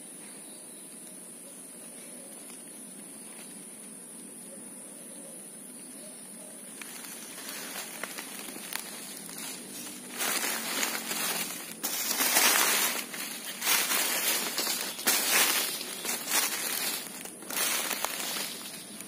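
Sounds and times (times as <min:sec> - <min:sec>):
rustling and crunching leaves: 0:06.6 - 0:19.0.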